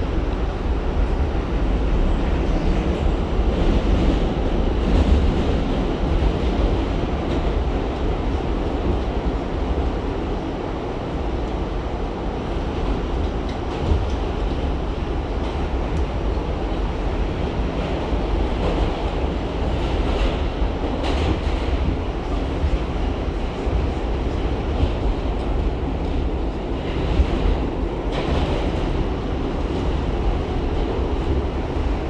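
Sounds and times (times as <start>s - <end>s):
subway train rumbling: 0.0s - 32.0s.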